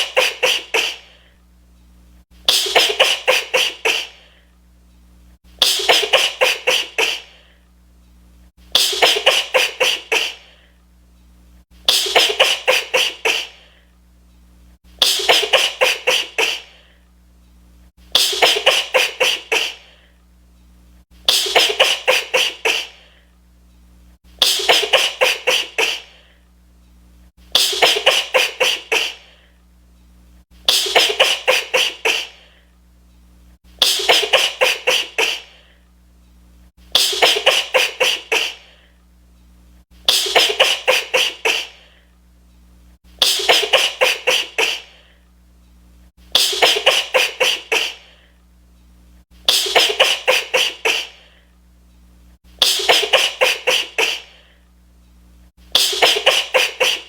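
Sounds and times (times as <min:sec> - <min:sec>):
woman sneezing rapidly: 0:00.0 - 0:01.3, 0:02.5 - 0:04.4, 0:05.6 - 0:07.5, 0:08.7 - 0:10.6, 0:11.9 - 0:13.7, 0:15.0 - 0:16.9, 0:18.1 - 0:20.1, 0:21.3 - 0:23.2, 0:24.4 - 0:26.3, 0:27.5 - 0:29.5, 0:30.7 - 0:32.6, 0:33.8 - 0:35.7, 0:36.9 - 0:38.9, 0:40.1 - 0:42.0, 0:43.2 - 0:45.1, 0:46.3 - 0:48.3, 0:49.5 - 0:51.4, 0:52.6 - 0:54.5, 0:55.7 - 0:57.0.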